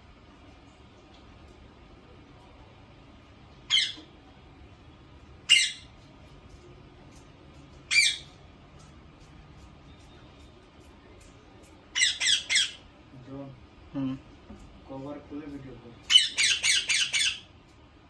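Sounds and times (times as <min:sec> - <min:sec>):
parakeet squawking: 0:03.7 - 0:04.1, 0:05.4 - 0:05.9, 0:07.9 - 0:08.4, 0:11.9 - 0:12.9, 0:16.0 - 0:17.5.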